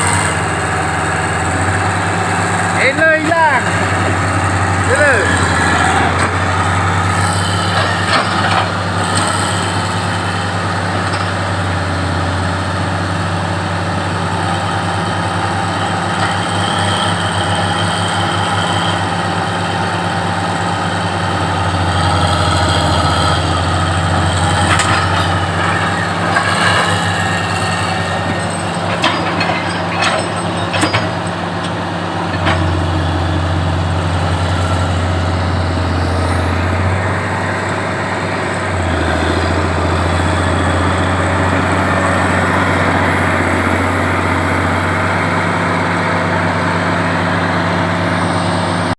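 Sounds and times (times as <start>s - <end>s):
heavy diesel engine droning: 0.0s - 48.9s
metal knocks and clanks: 23.6s - 35.4s.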